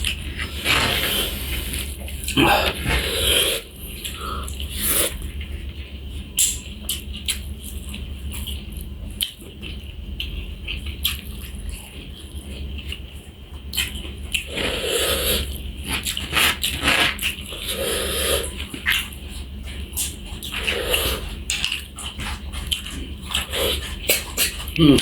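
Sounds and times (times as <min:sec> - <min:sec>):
person chewing: 0:00.0 - 0:05.5, 0:13.7 - 0:25.0
steady low hum: 0:00.0 - 0:25.0.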